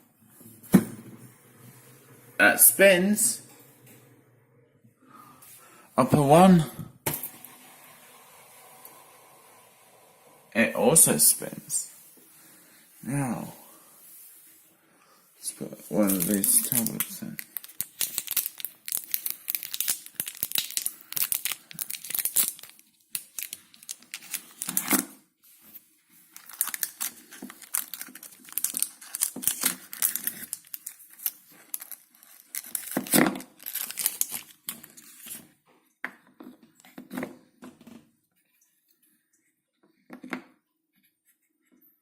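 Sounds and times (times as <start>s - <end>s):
plastic wrapper crinkling and tearing: 15.8s - 35.5s.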